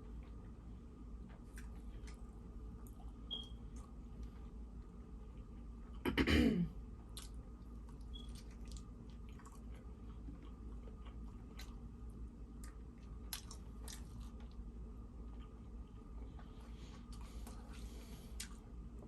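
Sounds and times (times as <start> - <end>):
person chewing food: 7.0 - 18.8.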